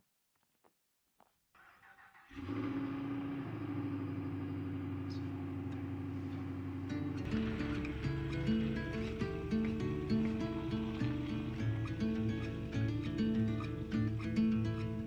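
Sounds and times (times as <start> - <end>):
pickup truck engine running: 2.3 - 15.0
music: 6.9 - 15.0.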